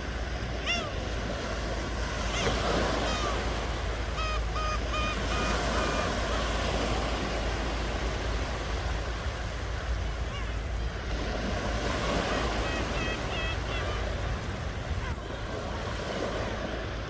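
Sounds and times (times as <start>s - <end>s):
ocean surf washing: 0.0s - 17.0s
bird calling: 0.4s - 9.2s, 9.8s - 15.2s.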